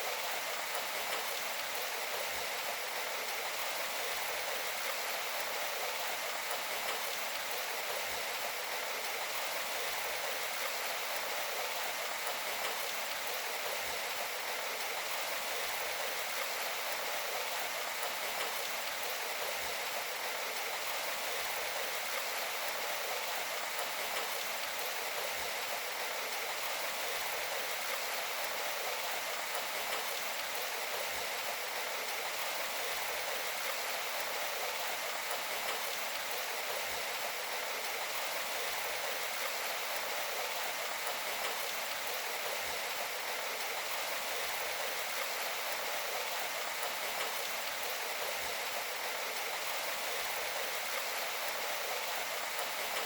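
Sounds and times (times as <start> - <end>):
steady hiss of rain: 0.0 - 53.0.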